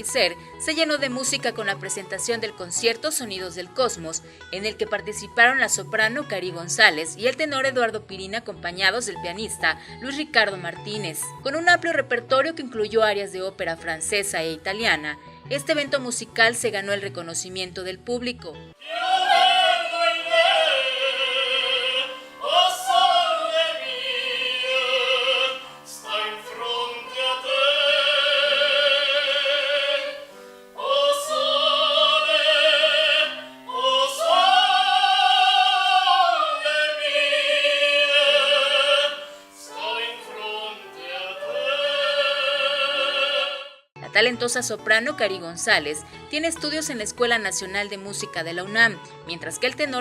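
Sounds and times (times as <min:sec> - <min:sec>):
singer breathing: 0:00.4 - 0:00.6, 0:04.2 - 0:04.5, 0:09.8 - 0:10.0, 0:30.3 - 0:30.8, 0:39.2 - 0:39.6, 0:46.0 - 0:46.3
piano accompaniment: 0:18.7 - 0:43.1
operatic voice singing: 0:18.8 - 0:43.9.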